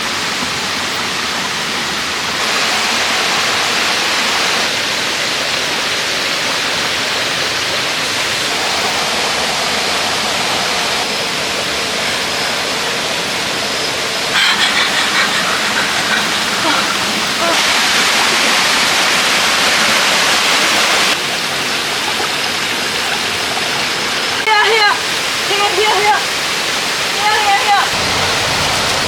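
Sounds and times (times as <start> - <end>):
steady rushing noise: 27.9 - 29.0.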